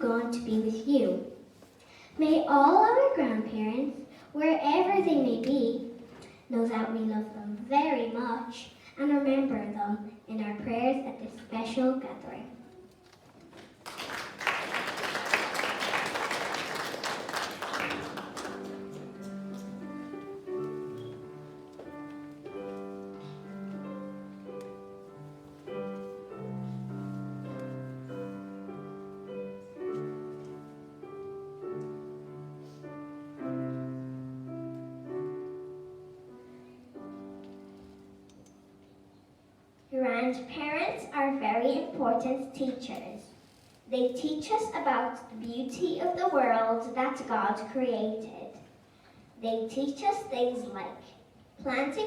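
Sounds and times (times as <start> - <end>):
audience applauding: 13.6 - 19.2
piano playing a tune: 14.7 - 39.7.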